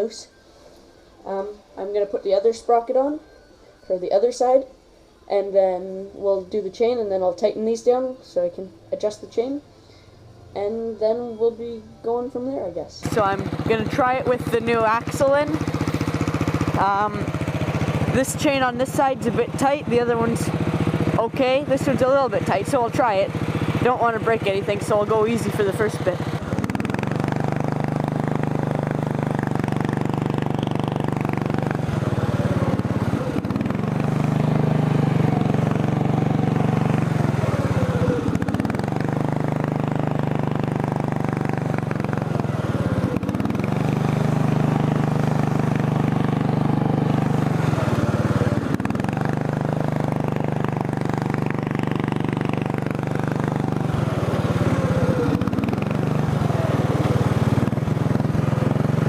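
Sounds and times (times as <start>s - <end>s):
lawn mower engine revving: 13.0s - 59.0s.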